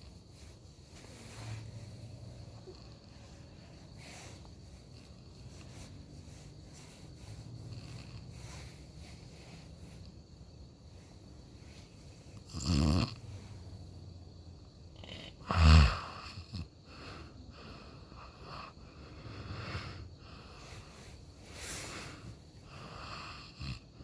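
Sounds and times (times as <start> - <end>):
quiet breathing: 0.0 - 24.0
person snoring: 12.4 - 13.5, 15.0 - 16.7.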